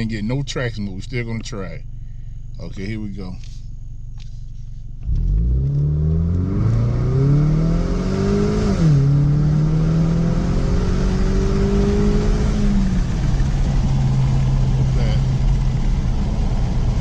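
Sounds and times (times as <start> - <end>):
car engine revving hard: 5.0 - 17.0.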